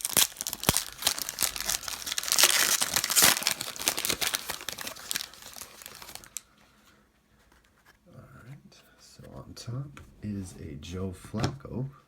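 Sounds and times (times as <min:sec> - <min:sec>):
wrapper tearing and crinkling: 0:00.0 - 0:06.4.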